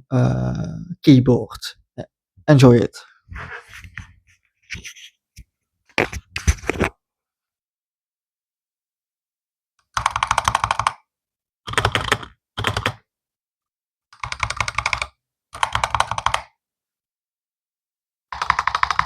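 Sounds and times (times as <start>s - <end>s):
keyboard typing clacks: 10.0s - 11.0s, 11.7s - 13.0s, 14.2s - 16.5s, 18.4s - 19.0s.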